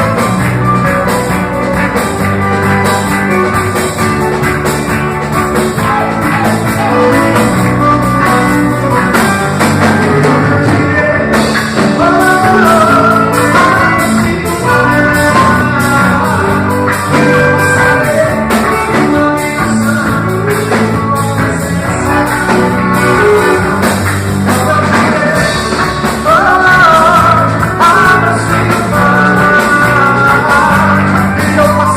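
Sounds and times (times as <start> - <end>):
worship song with band: 0.0 - 31.9.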